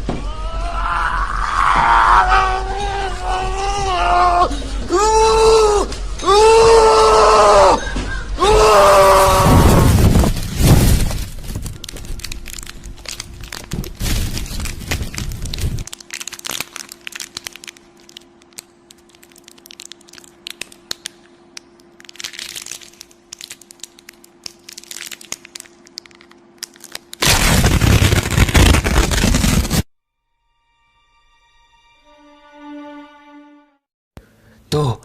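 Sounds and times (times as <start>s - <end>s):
loud burst of noise: 8.4s - 12.2s, 27.2s - 29.9s
sharp crackles and clicks: 9.4s - 29.9s.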